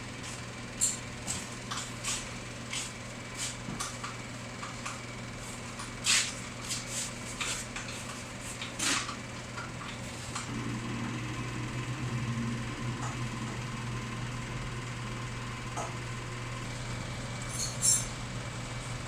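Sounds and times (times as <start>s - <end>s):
steady low hum: 10.4s - 19.0s.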